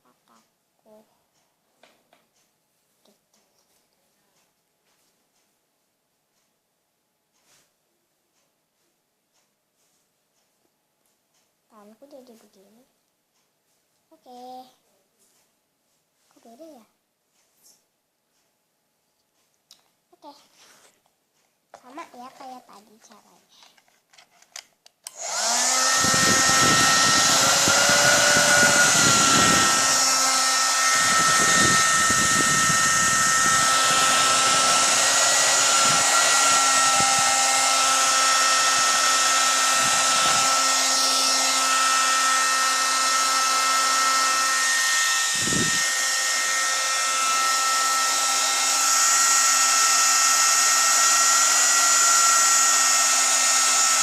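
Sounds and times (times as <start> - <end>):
hair dryer running: 25.1 - 54.0.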